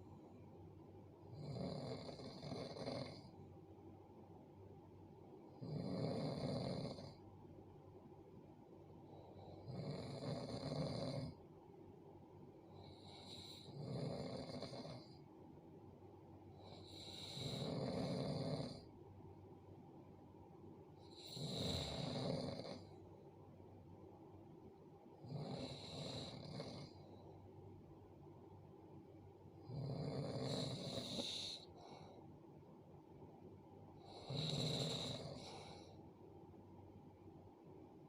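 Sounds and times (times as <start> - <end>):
person snoring: 1.3 - 3.3, 5.6 - 7.2, 9.2 - 11.4, 12.8 - 15.2, 16.6 - 18.9, 21.1 - 22.9, 25.2 - 27.0, 29.6 - 32.1, 34.0 - 35.9.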